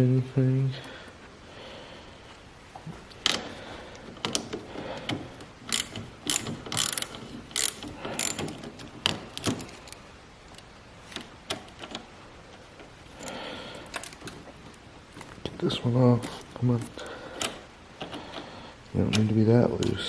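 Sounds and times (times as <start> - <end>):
ratchet wrench clicking: 5.7 - 10.6.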